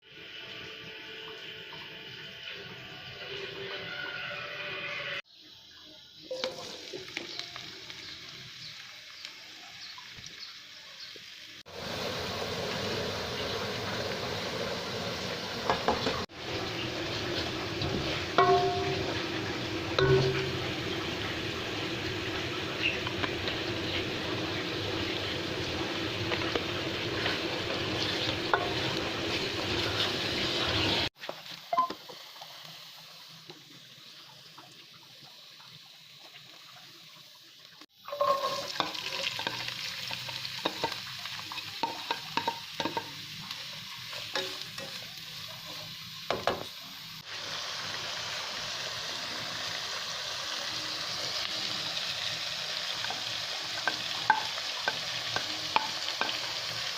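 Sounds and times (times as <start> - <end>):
food sizzling in a pan: 0.0 - 56.9
spoon stirring and knocking pan: 15.6 - 16.2, 17.3 - 24.6, 26.2 - 30.2, 38.1 - 43.2, 44.1 - 45.0, 53.0 - 56.7.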